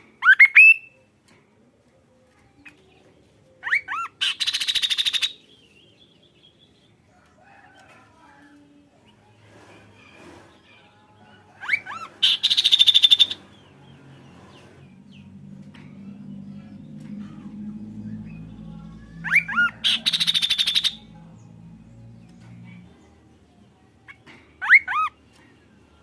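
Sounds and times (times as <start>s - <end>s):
songbird whistles and trill: 0.2s - 1.1s, 3.6s - 6.0s, 11.6s - 13.4s, 19.2s - 21.0s, 24.1s - 25.2s
faint low hum: 13.0s - 24.6s.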